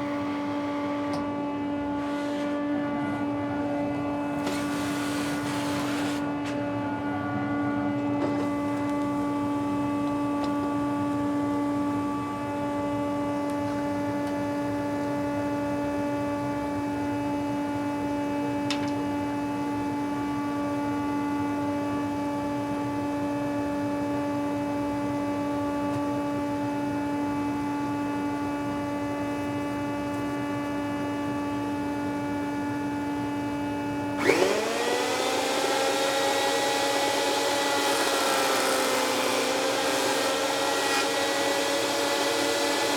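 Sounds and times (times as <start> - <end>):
electric wood planer running: 0.0 - 10.1, 34.0 - 42.9.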